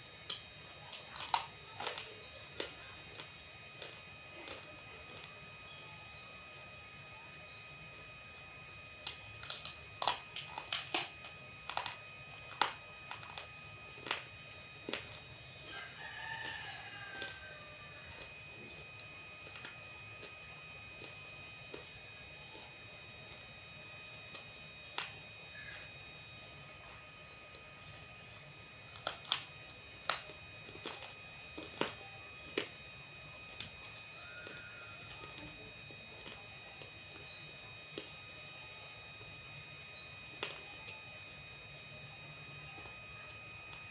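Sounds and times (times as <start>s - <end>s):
clay crunching with crisp cracks: 0.1s - 5.8s, 9.0s - 27.6s, 28.3s - 37.3s, 40.3s - 41.0s
clay crunching in crisp snaps: 9.0s - 20.4s, 28.4s - 32.8s.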